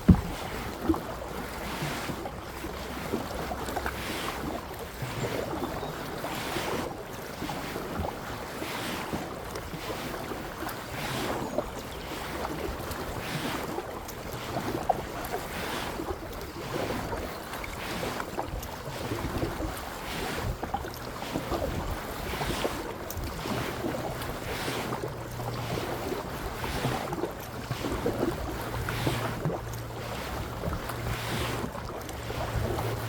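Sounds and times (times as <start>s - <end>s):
paddle strokes in water: 0.0s - 33.0s
wind buffeting microphone: 30.4s - 33.0s.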